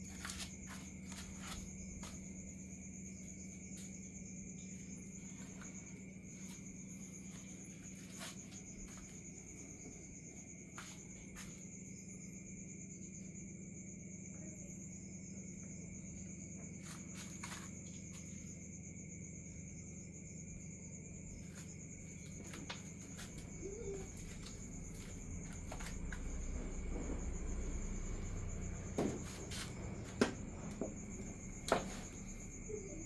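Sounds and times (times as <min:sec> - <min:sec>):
high-pitched insect trill: 0:00.0 - 0:33.0
low hum: 0:23.6 - 0:33.0.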